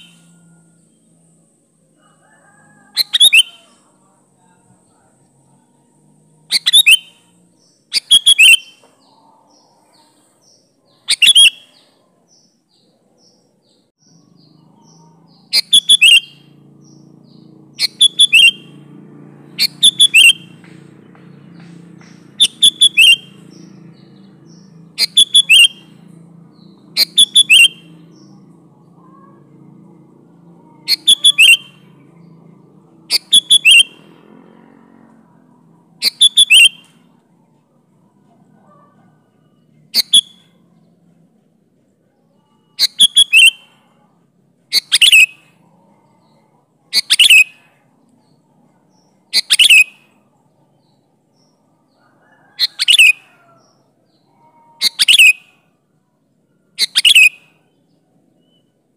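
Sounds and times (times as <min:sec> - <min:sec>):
faint high chirps: 0:00.0 - 0:58.8
bulbul singing bubbly phrases: 0:26.7 - 0:34.1.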